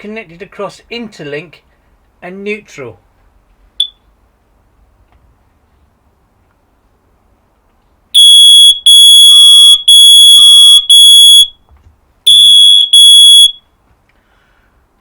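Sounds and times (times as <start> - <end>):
smoke alarm beeping: 8.2 - 11.5, 12.3 - 13.6.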